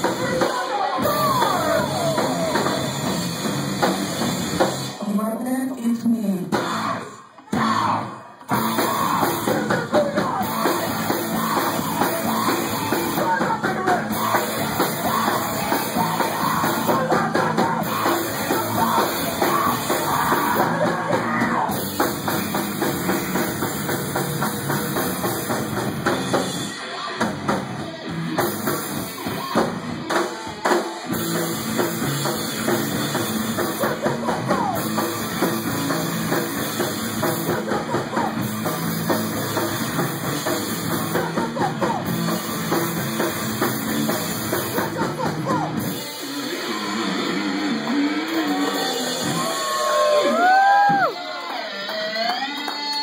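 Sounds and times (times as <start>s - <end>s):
drum kit: 0.0s - 5.2s, 6.4s - 51.2s
rock band playing: 0.0s - 53.0s.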